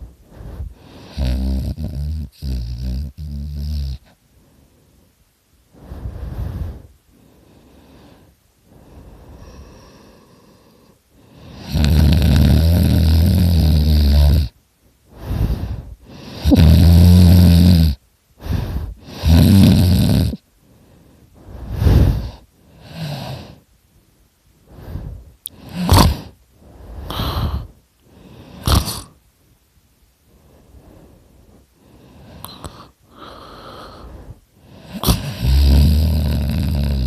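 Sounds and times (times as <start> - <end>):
person breathing: 0.0 - 1.4, 4.0 - 11.8, 14.8 - 16.6, 18.4 - 19.4, 20.5 - 23.7, 24.6 - 29.2, 30.2 - 36.3
person snoring loudly: 0.4 - 4.1, 9.4 - 14.6, 15.2 - 20.4, 25.0 - 26.4, 28.5 - 29.2, 34.7 - 37.0.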